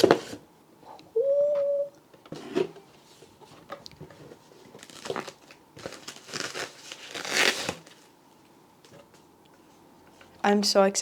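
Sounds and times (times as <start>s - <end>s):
paper and plastic crinkling: 3.1s - 8.1s.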